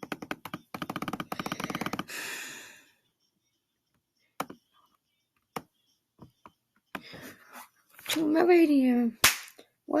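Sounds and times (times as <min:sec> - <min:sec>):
computer keyboard keys clicking: 0:00.0 - 0:02.0.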